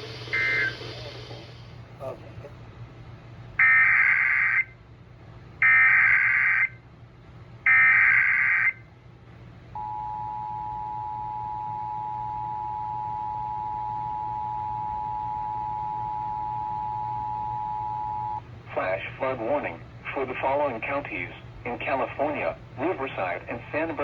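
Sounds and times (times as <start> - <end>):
two-tone attention signal: 0.3 - 1.1.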